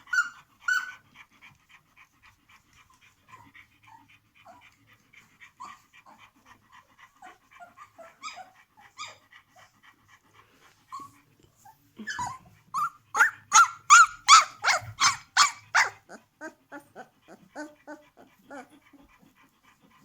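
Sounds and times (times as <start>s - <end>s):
puppy high-pitched cries: 12.0s - 16.8s
puppies squeaking and whimpering: 12.0s - 18.7s.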